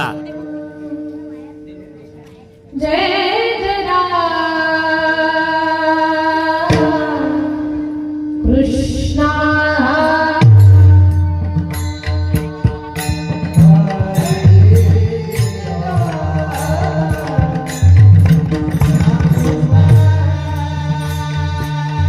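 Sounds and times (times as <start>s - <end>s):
drum strokes: 10.4s - 22.0s.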